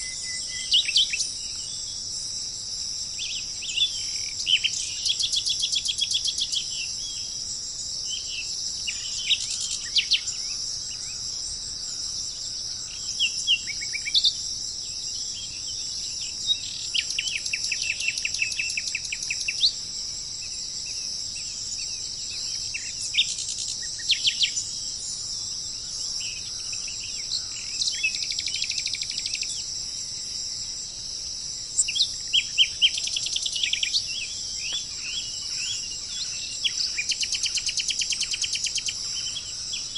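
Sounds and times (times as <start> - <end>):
insect chorus: 0.0 - 39.9
birds chirping and trilling: 8.0 - 19.8, 31.8 - 39.9.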